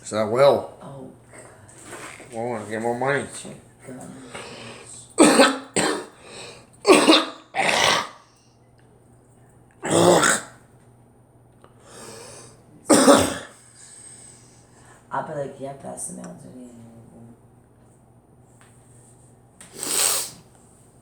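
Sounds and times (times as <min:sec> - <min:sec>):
person coughing: 0:05.2 - 0:06.2, 0:06.8 - 0:08.2, 0:09.8 - 0:10.5, 0:12.9 - 0:13.6.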